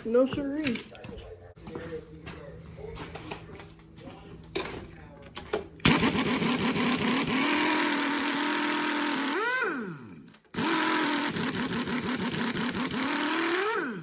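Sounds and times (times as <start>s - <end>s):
impact wrench hammering: 5.8s - 14.0s.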